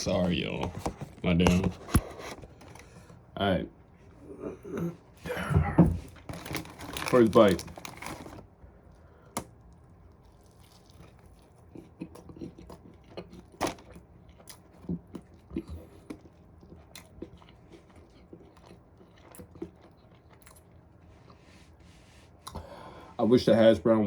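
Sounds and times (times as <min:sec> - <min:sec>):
person chewing with crunches: 0:04.1 - 0:22.8.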